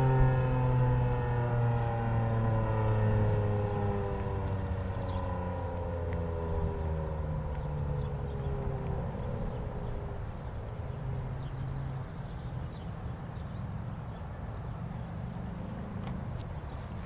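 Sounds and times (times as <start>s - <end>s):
warning siren winding down: 0.0s - 9.7s.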